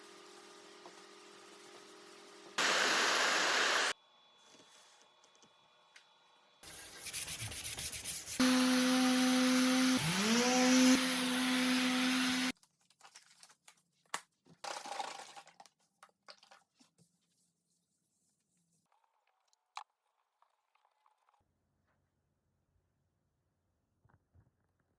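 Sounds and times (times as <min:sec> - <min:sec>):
power sander on wood: 0:08.4 - 0:12.5.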